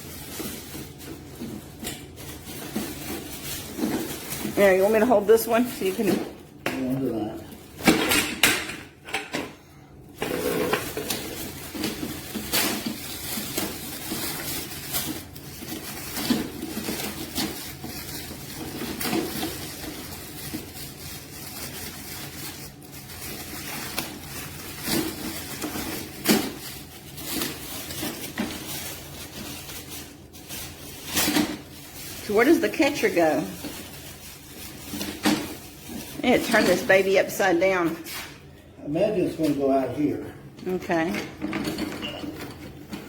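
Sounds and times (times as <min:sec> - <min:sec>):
packaging rustling: 0:00.0 - 0:08.1, 0:10.2 - 0:38.4
plastic parts clattering: 0:10.2 - 0:22.6, 0:41.2 - 0:43.0.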